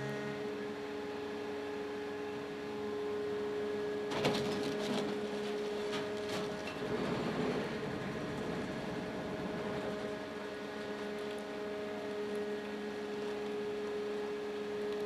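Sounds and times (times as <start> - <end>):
hydraulic pump whine: 0.0 - 4.3.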